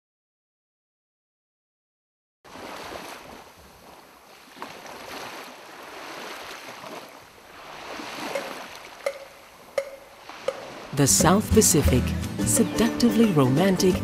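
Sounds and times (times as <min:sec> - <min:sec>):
ocean waves washing in: 0:02.5 - 0:12.1.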